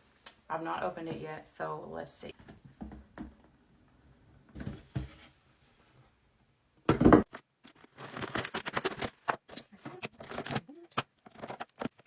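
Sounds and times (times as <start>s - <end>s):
box rustling: 7.6s - 12.0s
packaging crinkling and clicking: 7.7s - 12.0s.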